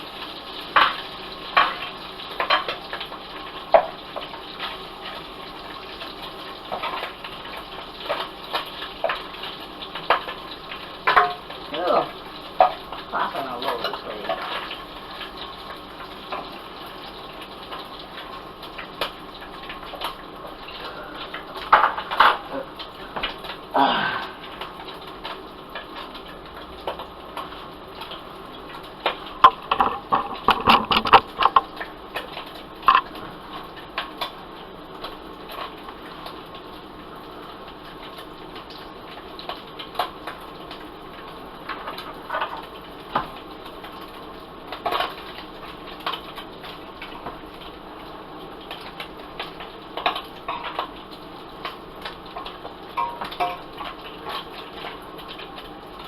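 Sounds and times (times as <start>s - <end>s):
food sizzling in hot oil: 0.0s - 56.0s
oil popping: 25.8s - 33.3s.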